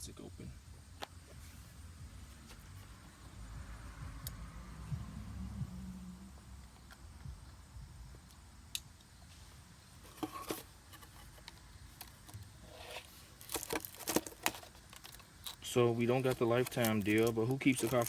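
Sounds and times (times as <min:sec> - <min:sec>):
low hum: 0:01.4 - 0:09.0
plastic wrapping crinkling: 0:11.9 - 0:18.0.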